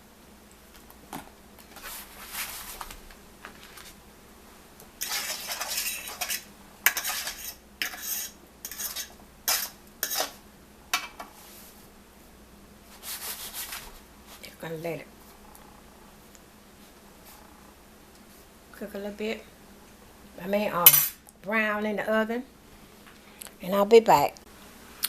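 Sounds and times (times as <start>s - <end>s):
metal baking sheet scraping: 1.7s - 2.9s, 5.0s - 10.4s, 12.9s - 14.0s.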